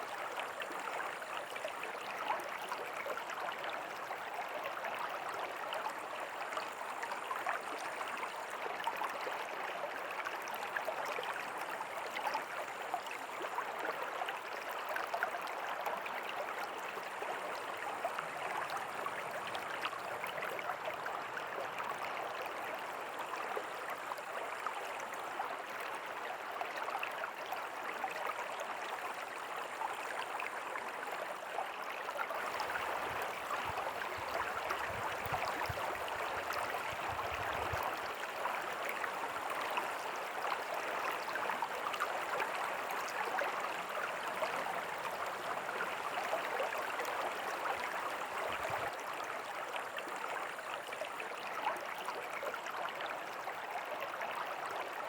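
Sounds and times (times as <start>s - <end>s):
river babbling over stones: 32.4s - 53.9s.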